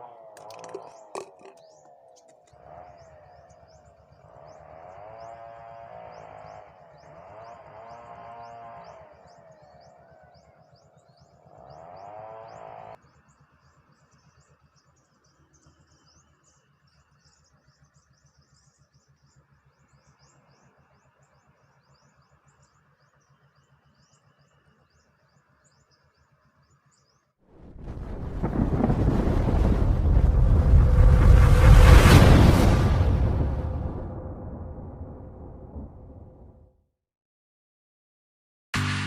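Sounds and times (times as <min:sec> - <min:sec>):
motor hum: 0:00.0 - 0:06.6.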